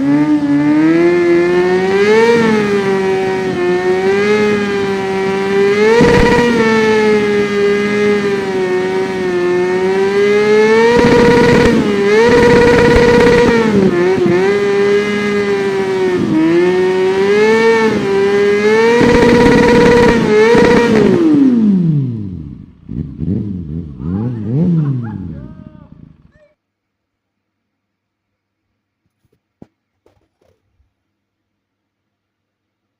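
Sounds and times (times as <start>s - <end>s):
motorcycle engine revving: 0.0s - 26.4s.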